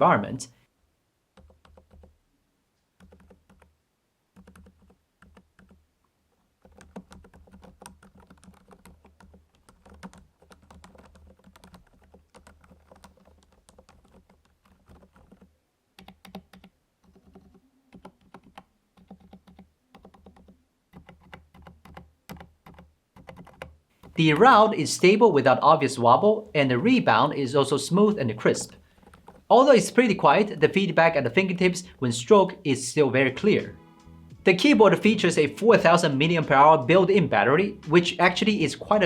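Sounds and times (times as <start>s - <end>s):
muted keyboard typing: 1.3s - 2.2s, 2.9s - 3.8s, 4.4s - 25.6s, 26.4s - 32.0s.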